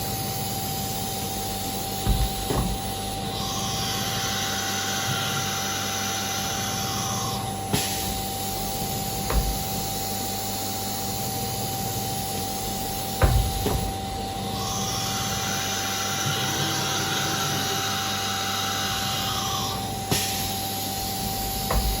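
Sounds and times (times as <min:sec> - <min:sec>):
hissing whir: 0:00.0 - 0:22.0
machine hum: 0:00.0 - 0:22.0
tool changer clunks: 0:02.0 - 0:02.9, 0:09.2 - 0:09.8, 0:13.2 - 0:14.0, 0:21.7 - 0:22.0.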